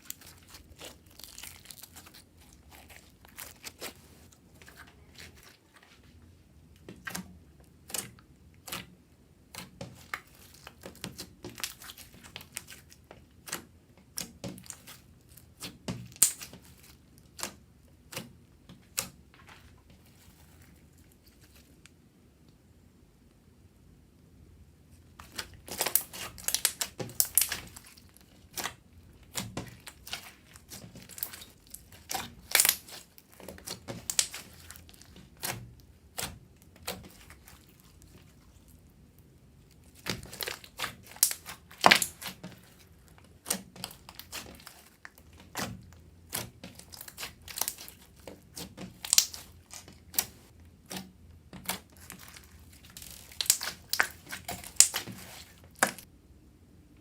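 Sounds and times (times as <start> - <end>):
crinkling and crackling clicks: 0.0 - 6.2, 25.2 - 56.1.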